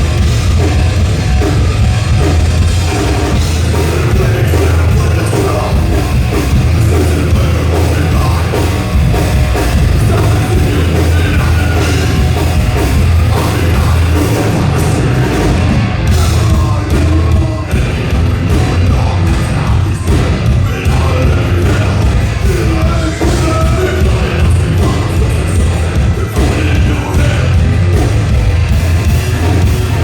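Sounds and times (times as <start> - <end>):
heavy metal band playing live: 0.0 - 30.0.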